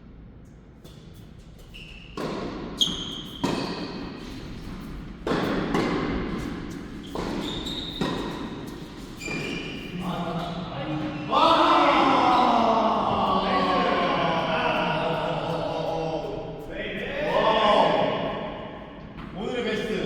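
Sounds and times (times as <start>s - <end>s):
shoes squeaking on court: 1.2s - 11.3s
racket striking tennis ball: 2.2s - 9.5s
tennis ball bouncing: 2.2s - 9.6s.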